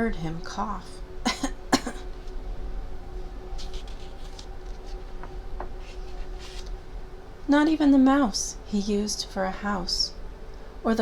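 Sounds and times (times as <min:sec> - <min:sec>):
faint steady hum: 0:00.0 - 0:11.0
person coughing: 0:01.3 - 0:02.1
soft rustles: 0:03.5 - 0:06.8.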